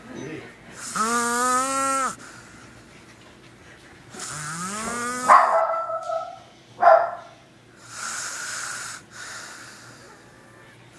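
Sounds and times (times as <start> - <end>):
man snoring loudly: 0.8 - 2.2, 4.2 - 5.3, 7.8 - 9.4
breathy hissing breaths: 0.8 - 5.3, 7.7 - 10.3.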